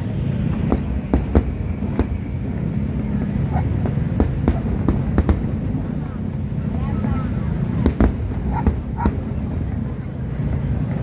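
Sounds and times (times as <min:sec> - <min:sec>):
fireworks bangs: 0:00.0 - 0:11.0
steady low rumble: 0:00.0 - 0:11.0.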